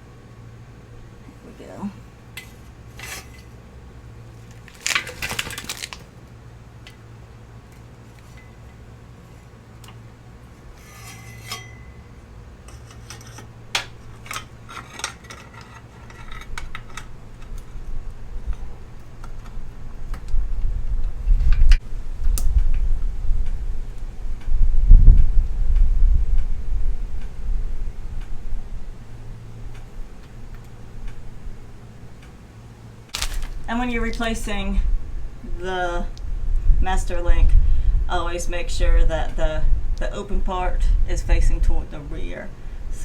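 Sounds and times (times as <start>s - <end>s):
scraping rustle: 2.4s - 3.6s, 4.3s - 6.1s, 10.6s - 11.9s, 14.1s - 17.8s, 33.1s - 34.3s
low rumbling: 17.2s - 29.1s.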